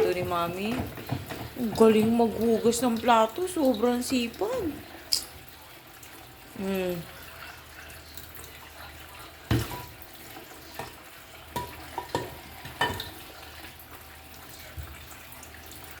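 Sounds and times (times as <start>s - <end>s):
dishes clattering in a sink: 0.0s - 3.9s, 9.4s - 13.6s.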